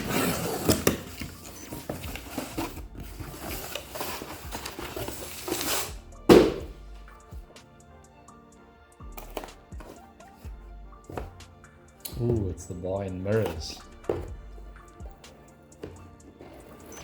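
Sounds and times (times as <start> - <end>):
packaging rustling and tearing: 0.0 - 5.9
background music: 0.0 - 17.0
loud thud: 6.3 - 6.8.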